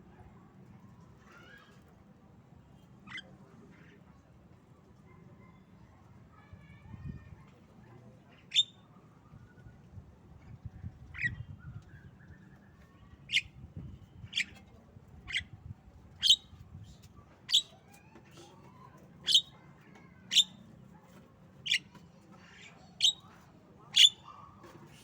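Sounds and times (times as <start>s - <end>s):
bird giving sharp calls: 19.3s - 19.5s, 23.0s - 23.2s, 24.0s - 24.3s.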